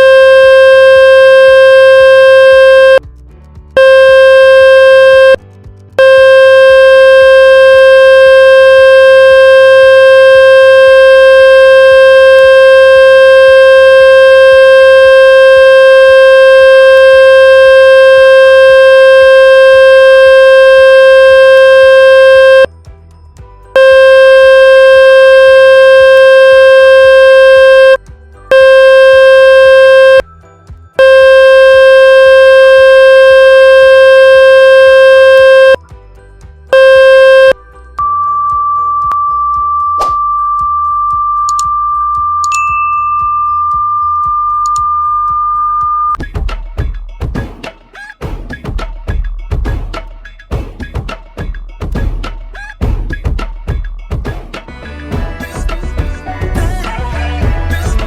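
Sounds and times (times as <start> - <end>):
electronic buzzing tone: 0.0 - 3.0, 3.8 - 5.4, 6.0 - 22.7, 23.8 - 30.2, 31.0 - 35.8, 36.8 - 46.2.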